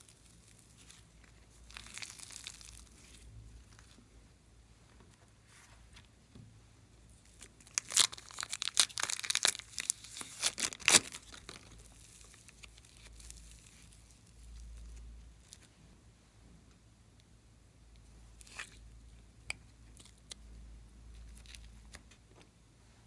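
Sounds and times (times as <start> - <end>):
slime handling: 0.0 - 4.0, 7.1 - 15.7.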